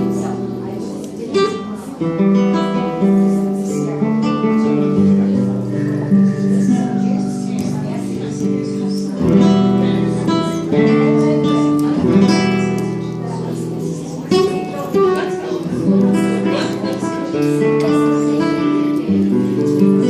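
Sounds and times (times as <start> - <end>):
folk guitar strummed chords: 0.0 - 20.0.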